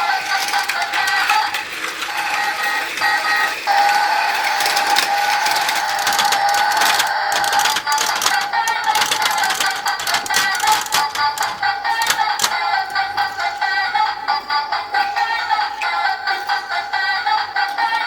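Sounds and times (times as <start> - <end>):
rapid plastic clicking: 0.0 - 2.1, 3.0 - 13.6
toy electronic tone: 0.1 - 13.8.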